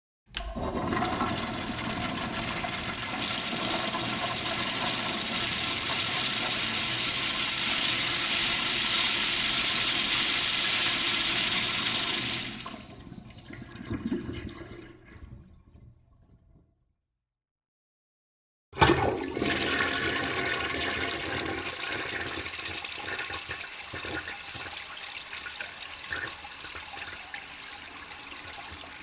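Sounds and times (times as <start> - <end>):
toilet flushing: 0.3 - 16.0, 18.8 - 29.0
water gurgling and trickling: 0.4 - 10.2, 12.2 - 16.7.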